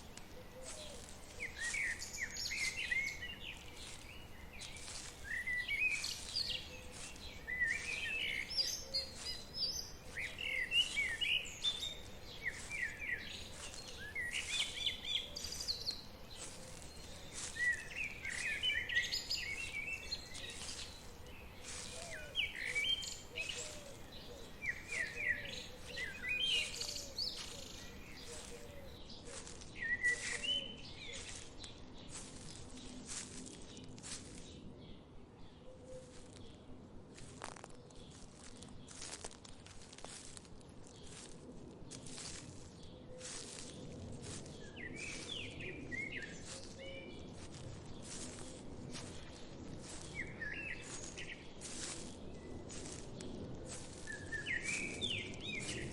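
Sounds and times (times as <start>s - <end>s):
forest ambience: 0.0s - 34.8s, 35.5s - 36.4s, 37.2s - 55.9s
songbirds chirping: 0.0s - 55.9s.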